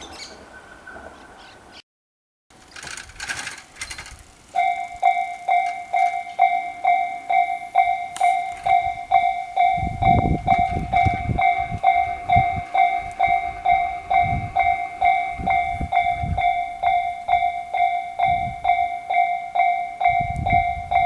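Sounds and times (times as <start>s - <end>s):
train wheels rumbling: 2.6s - 21.0s
level-crossing warning bell: 4.5s - 21.0s.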